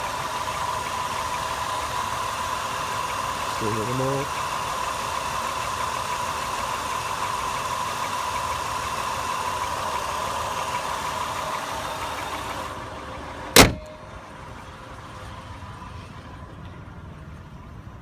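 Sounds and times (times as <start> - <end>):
car engine idling with knock: 0.0 - 15.5
loud slam: 13.6 - 14.0.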